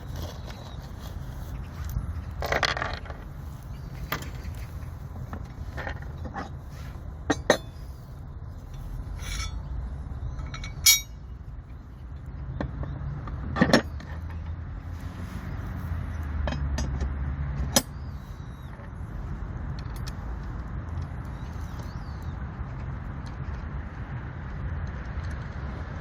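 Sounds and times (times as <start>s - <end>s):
steady low rumble: 0.0s - 12.6s
metal parts clinking and scraping: 9.0s - 9.7s, 10.4s - 11.2s.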